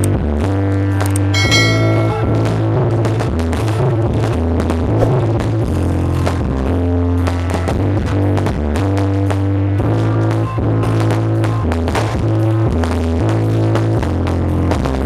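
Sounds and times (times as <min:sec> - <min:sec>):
bright high synth tone: 0:01.4 - 0:02.8.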